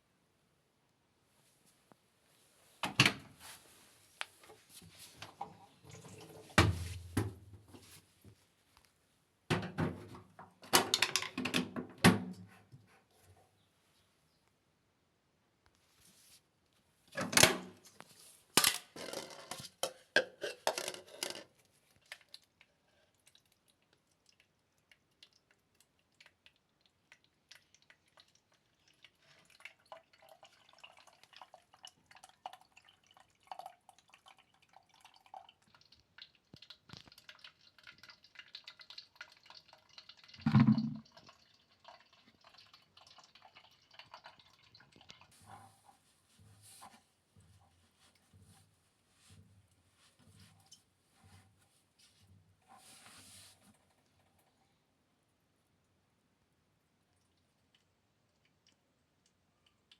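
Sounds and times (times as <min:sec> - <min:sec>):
water trickling and dripping: 0:05.1 - 0:06.9, 0:21.8 - 0:45.6, 0:56.9 - 0:59.9.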